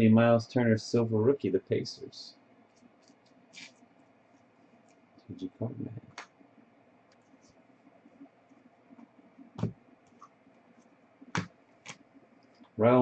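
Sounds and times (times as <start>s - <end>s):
trading cards being handled: 2.7s - 5.0s, 7.0s - 12.8s.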